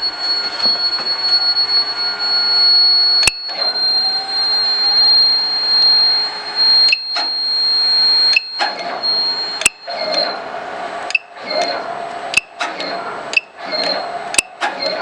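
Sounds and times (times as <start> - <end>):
robot buzzing whine: 0.0 - 10.5.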